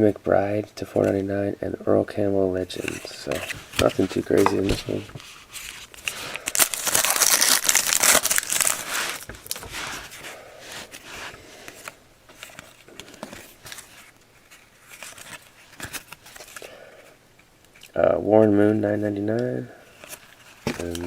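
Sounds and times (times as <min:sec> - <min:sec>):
wrapper tearing and crinkling: 0:05.6 - 0:10.1.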